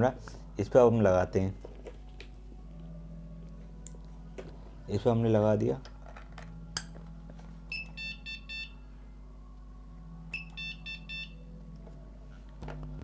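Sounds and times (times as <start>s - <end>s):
low steady hum: 0.0s - 13.0s
cable tester beeping: 7.7s - 8.8s, 10.3s - 11.4s.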